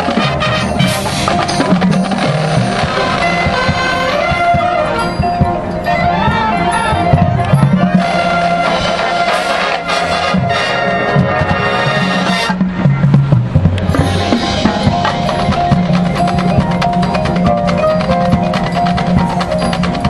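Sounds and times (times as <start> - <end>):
brass sustained chords: 0.0 - 12.9
marching drums and percussion: 0.0 - 20.0.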